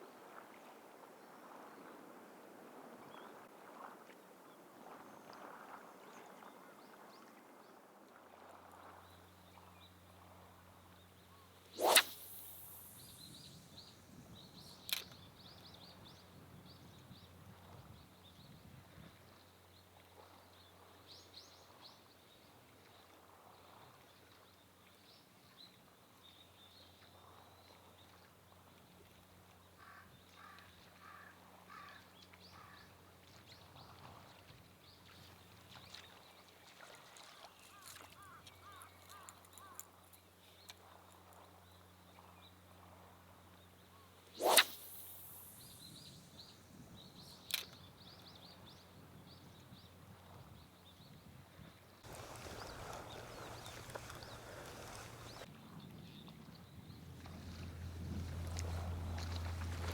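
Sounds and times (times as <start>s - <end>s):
loud rising whoosh: 11.8s - 13.2s, 44.4s - 45.8s
faint bird chirps: 44.0s - 48.9s.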